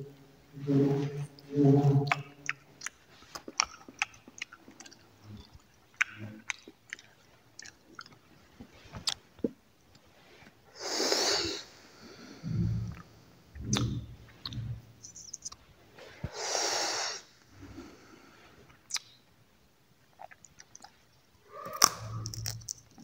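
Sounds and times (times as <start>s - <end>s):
crunching and chewing dry fruit: 2.1s - 9.2s, 20.1s - 23.0s
long breath: 10.7s - 13.3s, 16.2s - 18.7s.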